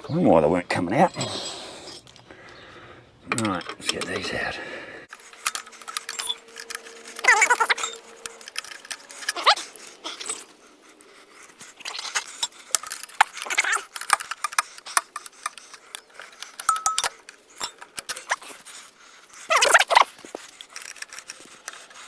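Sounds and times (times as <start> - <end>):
hand tools clinking on metal: 5.1 - 22.0.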